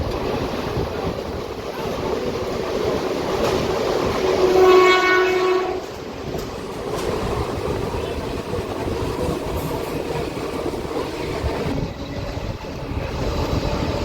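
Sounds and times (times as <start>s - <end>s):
train wheels rumbling on track: 0.0s - 14.0s
train horn blast: 4.3s - 6.0s.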